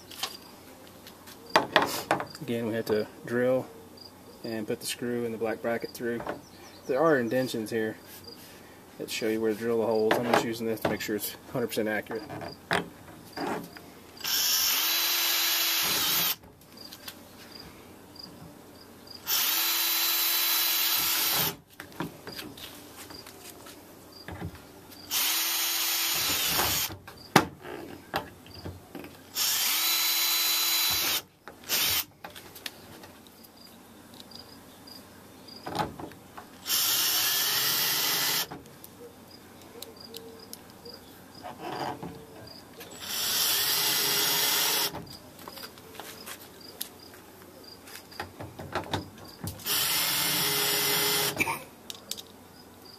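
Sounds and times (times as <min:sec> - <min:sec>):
power drill boring: 0:14.2 - 0:16.4, 0:19.2 - 0:21.6, 0:25.1 - 0:26.9, 0:29.4 - 0:32.0, 0:36.6 - 0:38.5, 0:43.0 - 0:45.0, 0:49.6 - 0:51.4.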